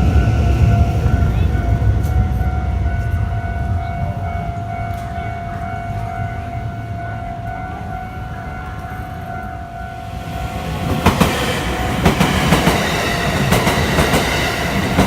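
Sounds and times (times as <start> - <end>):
low rumble: 0.0 - 5.8
level-crossing alarm ringing: 0.0 - 15.0.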